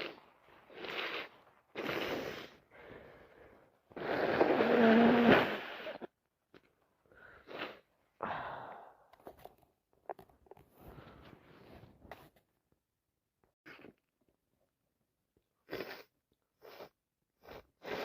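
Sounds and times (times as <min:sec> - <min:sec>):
sniffles: 0:00.0 - 0:02.6, 0:15.6 - 0:18.0
wet nose blowing: 0:00.0 - 0:03.2, 0:03.9 - 0:06.1, 0:07.2 - 0:07.9, 0:15.6 - 0:18.0.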